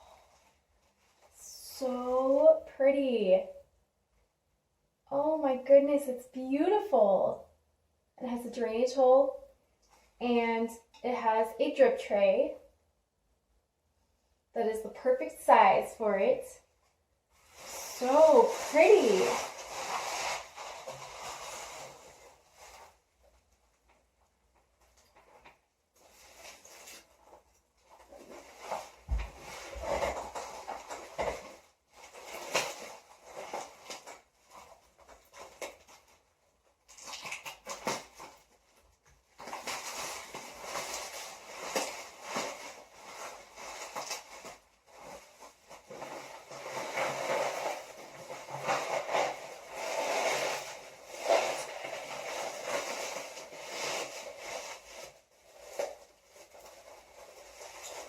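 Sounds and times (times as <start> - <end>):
packing material crinkling: 17.4 - 23.0, 24.8 - 58.0.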